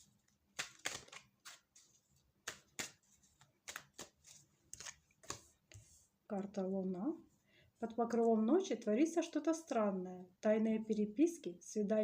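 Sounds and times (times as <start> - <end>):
cards being shuffled: 0.2 - 5.9.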